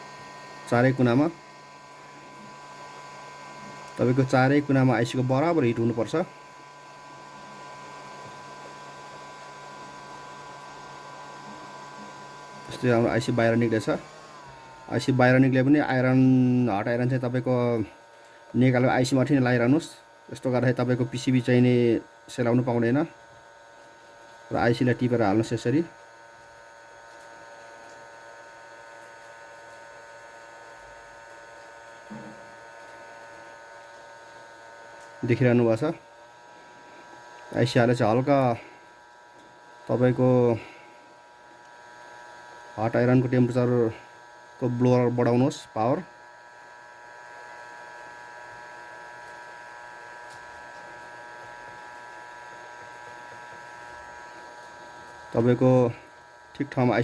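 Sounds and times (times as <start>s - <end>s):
hot-air rework station humming: 0.0s - 57.0s.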